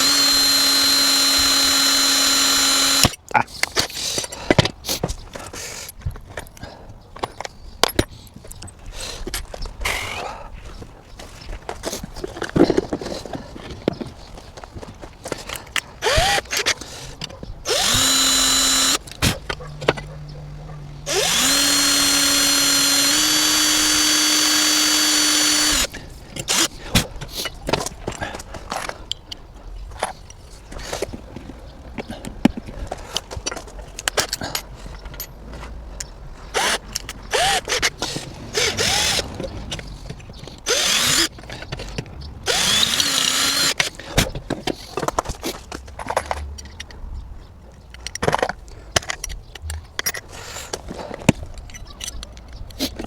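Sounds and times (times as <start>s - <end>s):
power drill drilling: 0.0s - 3.2s, 16.0s - 16.7s, 17.7s - 19.1s, 21.0s - 25.9s, 26.5s - 26.7s, 36.6s - 39.3s, 40.7s - 41.3s, 42.4s - 43.9s.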